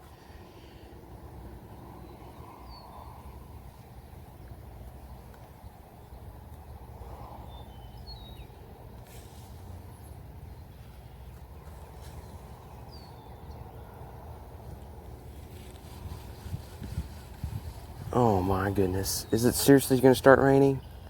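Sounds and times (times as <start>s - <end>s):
bird chirps: 7.4s - 8.6s.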